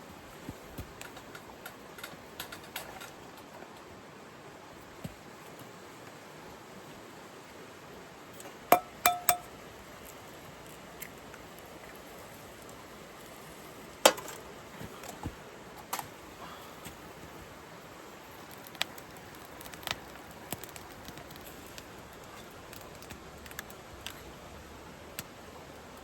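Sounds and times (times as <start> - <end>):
tableware clinking: 8.8 - 9.5.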